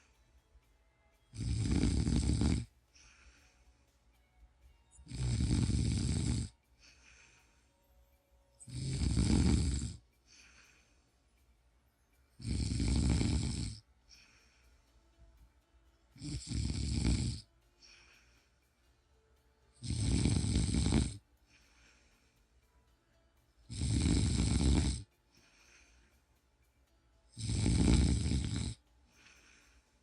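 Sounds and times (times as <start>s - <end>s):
soft breaths: 0.0s - 30.0s
person snoring: 1.2s - 3.6s, 4.9s - 7.7s, 8.6s - 11.0s, 12.4s - 14.6s, 16.2s - 18.4s, 19.8s - 22.3s, 23.7s - 26.0s, 27.3s - 30.0s.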